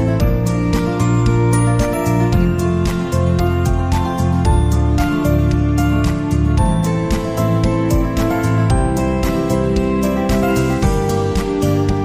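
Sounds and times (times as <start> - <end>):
music with plucked strings: 0.0 - 12.0.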